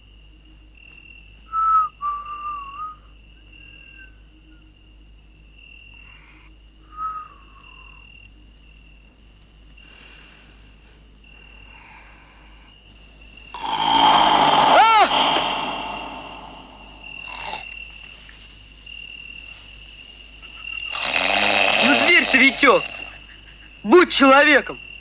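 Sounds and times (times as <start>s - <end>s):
night insects chirping: 0.0s - 25.0s
whistled notes: 1.6s - 3.0s
breathy rush of noise: 13.6s - 17.6s.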